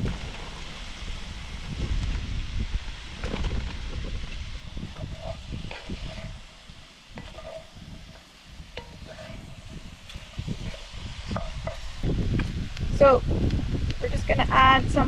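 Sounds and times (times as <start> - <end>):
wind rumble on microphone: 0.0 - 15.0
utensil scraping pan: 3.2 - 12.0.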